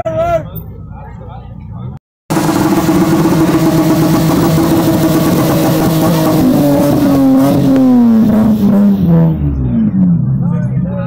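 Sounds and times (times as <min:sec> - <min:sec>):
car engine at high revs: 0:02.3 - 0:10.5.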